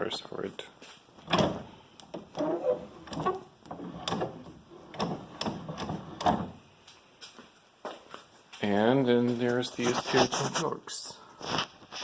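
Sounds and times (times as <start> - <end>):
metal vise scraping and knocking: 2.1 - 6.6.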